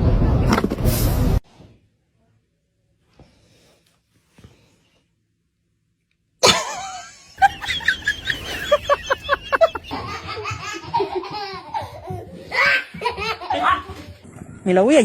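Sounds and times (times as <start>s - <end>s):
person laughing rhythmically: 6.4s - 13.7s.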